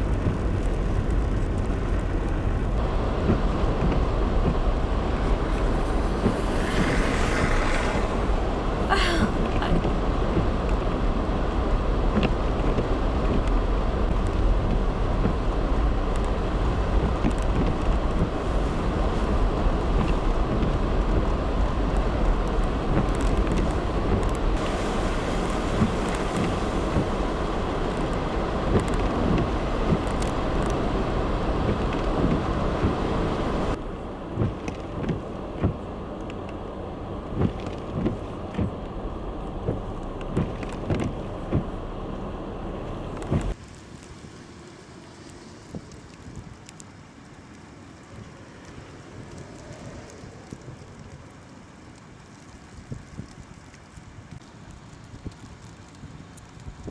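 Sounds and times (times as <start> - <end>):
traffic on slushy road: 0.0 - 56.9
vehicle passing: 4.8 - 9.9.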